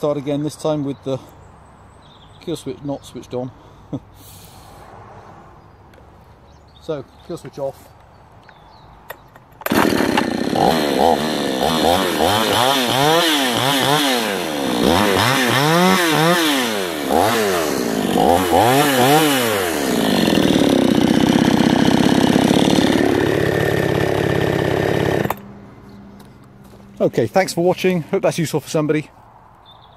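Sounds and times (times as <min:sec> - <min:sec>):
chainsaw engine revving: 0:09.6 - 0:25.5.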